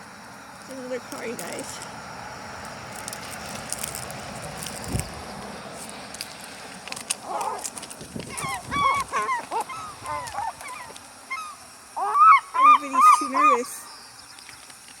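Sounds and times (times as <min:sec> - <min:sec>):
car tyres passing: 0:00.0 - 0:10.5
seagulls squawking: 0:08.3 - 0:13.9.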